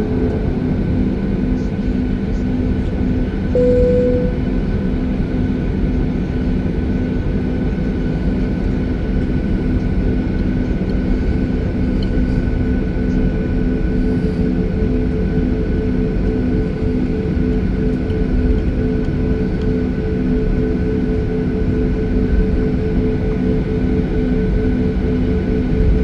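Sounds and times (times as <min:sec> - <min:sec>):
jet engine and airflow drone: 0:00.0 - 0:26.0
steady tonal hum: 0:03.5 - 0:04.8.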